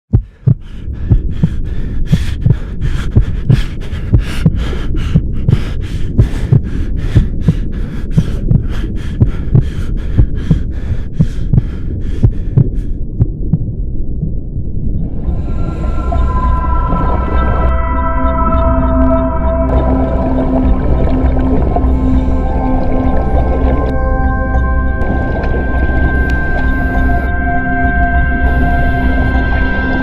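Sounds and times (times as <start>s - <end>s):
low hum: 0.1s - 30.0s
pulsing beat: 15.2s - 30.0s.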